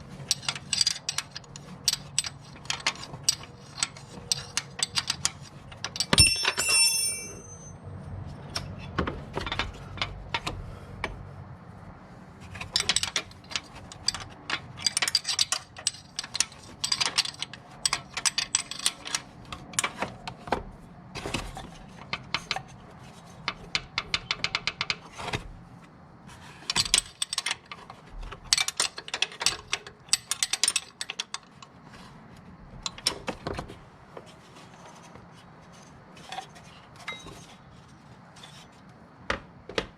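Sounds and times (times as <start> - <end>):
metal tools clinking: 5.9 - 7.9.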